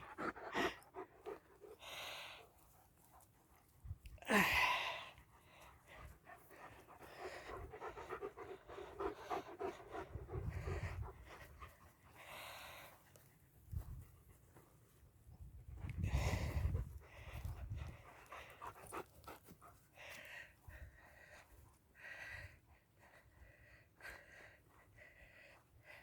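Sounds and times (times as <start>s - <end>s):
dog panting rapidly: 0.0s - 3.7s, 5.3s - 13.1s, 16.4s - 20.3s.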